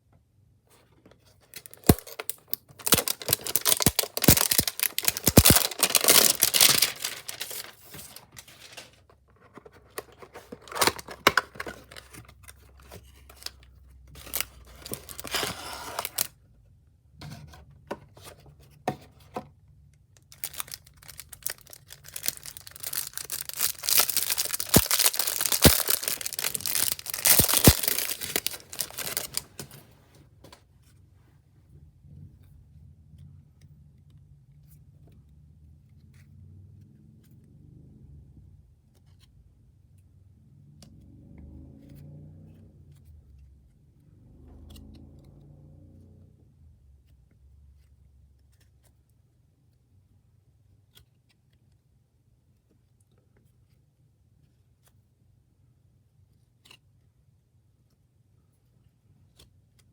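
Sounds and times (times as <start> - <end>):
plastic wrapping tearing: 1.6 - 8.9, 10.1 - 12.0, 14.2 - 16.3, 20.3 - 29.8.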